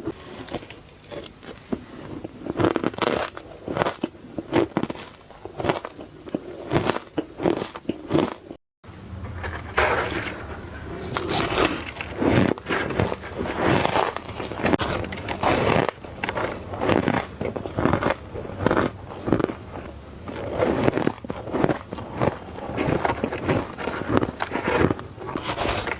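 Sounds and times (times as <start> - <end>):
ice crunching between teeth: 0.0 - 8.6, 9.5 - 25.9.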